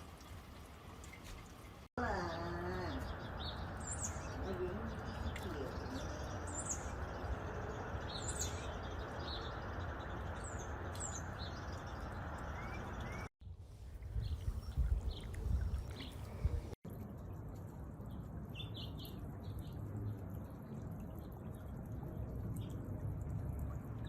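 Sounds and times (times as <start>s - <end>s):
birds chirping: 2.0s - 13.3s, 14.2s - 16.8s.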